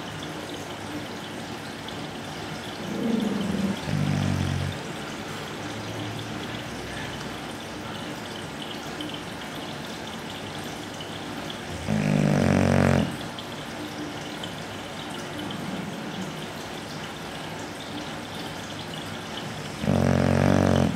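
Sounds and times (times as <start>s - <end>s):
dog snoring: 2.8s - 4.9s, 11.7s - 13.2s, 19.4s - 20.9s
faint dog breathing: 2.8s - 5.0s, 11.7s - 13.2s, 19.4s - 20.9s.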